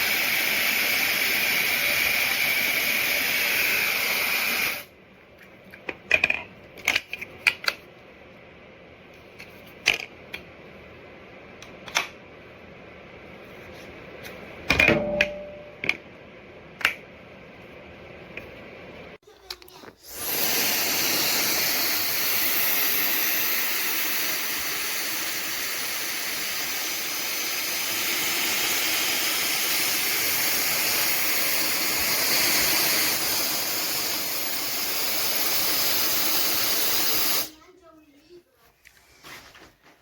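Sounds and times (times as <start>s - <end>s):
hair dryer blowing: 0.0s - 4.9s, 20.0s - 37.5s.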